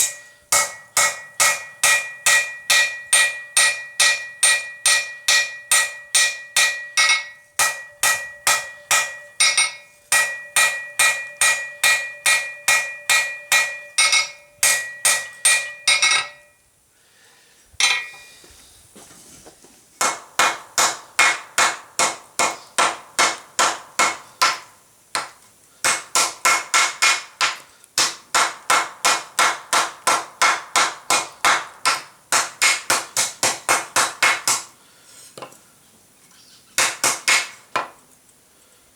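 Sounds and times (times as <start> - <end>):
anvil ringing: 0.0 - 16.6, 17.8 - 18.4
hammer striking steel on anvil: 0.0 - 16.6, 17.8 - 18.3, 20.0 - 34.7, 36.8 - 37.9.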